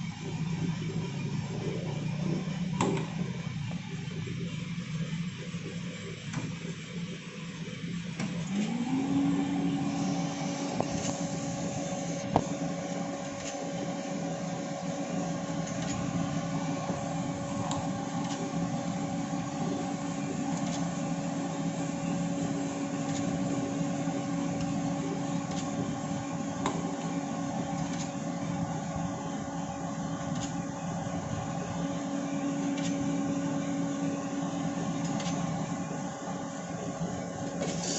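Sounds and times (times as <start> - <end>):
electric motor humming: 6.7 - 37.9.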